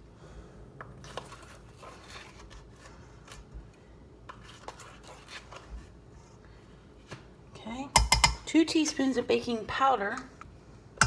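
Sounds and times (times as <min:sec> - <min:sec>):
spoon tapping against container: 0:08.0 - 0:08.4.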